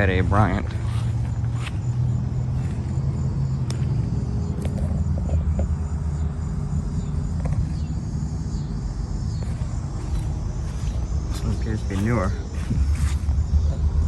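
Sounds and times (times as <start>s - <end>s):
air conditioner low hum: 0.0s - 14.0s.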